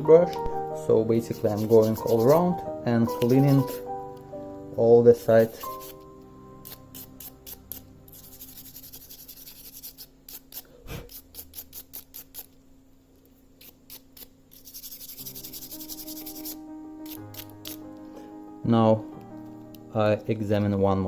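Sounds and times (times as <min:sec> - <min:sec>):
toothbrush bristles scrubbing: 0:01.3 - 0:02.5, 0:03.1 - 0:03.8, 0:05.4 - 0:06.0, 0:06.7 - 0:12.5, 0:13.6 - 0:16.6.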